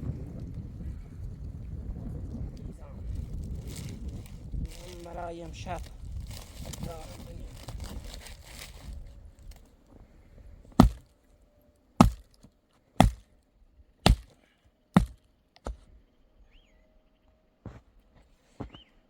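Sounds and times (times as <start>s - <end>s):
wood being chopped: 10.8s - 11.1s, 12.0s - 13.3s, 14.0s - 14.4s, 15.0s - 15.9s.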